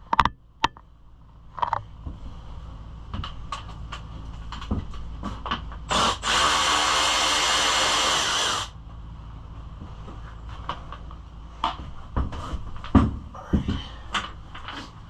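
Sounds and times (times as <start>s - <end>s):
power driver running: 5.8s - 8.8s.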